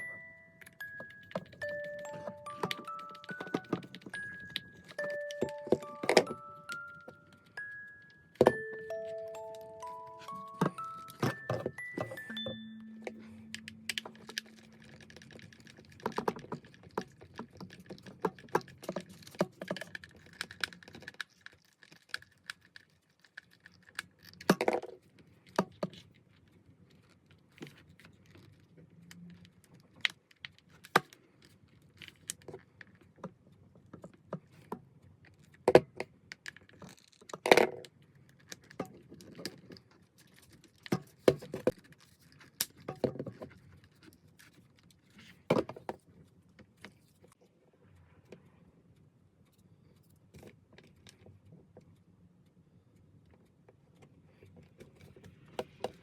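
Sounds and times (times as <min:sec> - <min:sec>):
small hard objects clicking: 0:00.0 - 0:12.6, 0:13.5 - 0:26.0.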